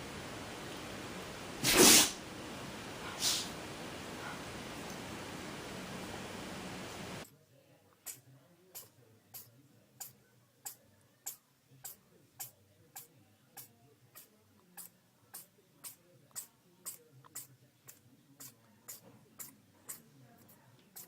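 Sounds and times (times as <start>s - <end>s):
faint clock ticking: 7.9s - 21.0s.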